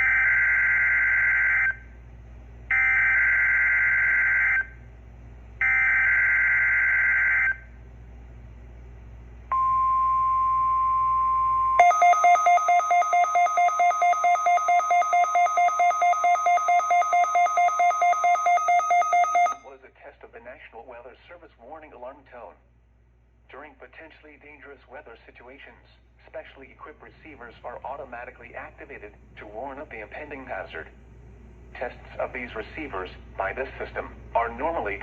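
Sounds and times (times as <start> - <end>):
steady warning alarm tone: 0.0 - 1.8, 2.7 - 4.8, 5.6 - 7.7, 9.5 - 19.7.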